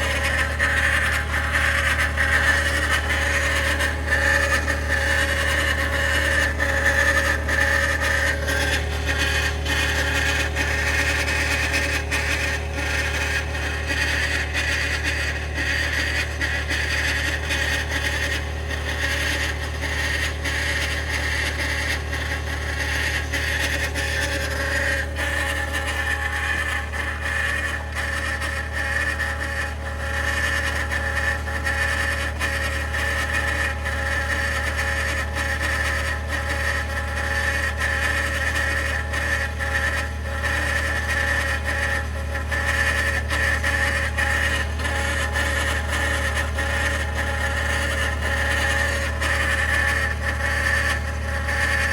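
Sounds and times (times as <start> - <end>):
steady whine: 0.0 - 34.0, 37.7 - 51.9
engine low hum: 0.0 - 34.1.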